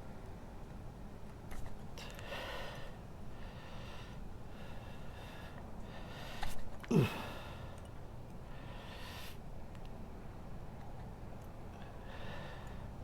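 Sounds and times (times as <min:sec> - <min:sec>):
man breathing hard: 0:02.1 - 0:07.8, 0:08.5 - 0:09.4, 0:11.7 - 0:13.0
man grunting: 0:06.9 - 0:07.3.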